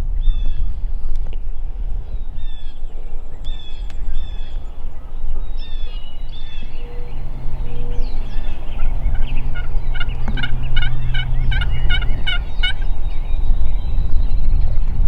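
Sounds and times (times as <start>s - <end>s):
wild turkey yelping: 6.5s - 13.6s.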